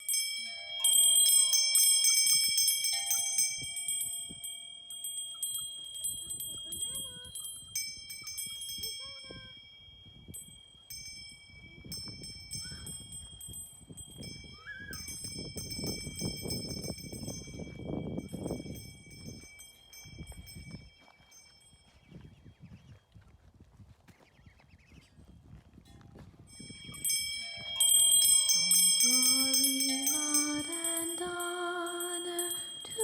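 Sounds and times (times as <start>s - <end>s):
wind chimes ringing: 0.0s - 22.7s, 25.2s - 33.0s.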